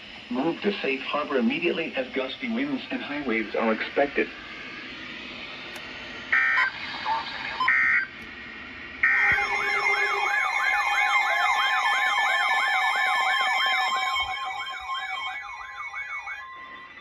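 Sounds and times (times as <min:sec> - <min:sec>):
electronic siren yelp: 0:06.3 - 0:08.1, 0:09.0 - 0:17.0
short electronic burst: 0:09.0 - 0:17.0
steady electronic tones: 0:09.0 - 0:17.0.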